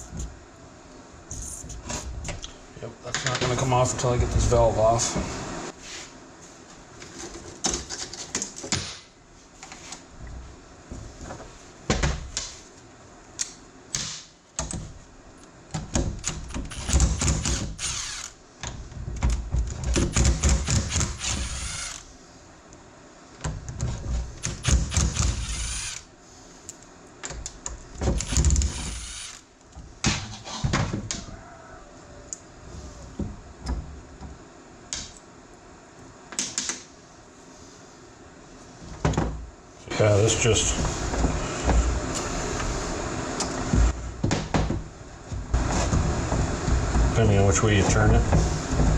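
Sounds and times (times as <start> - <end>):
steady tool noise: 16.2 - 18.4, 19.9 - 22.2, 24.2 - 26.8, 28.0 - 29.5.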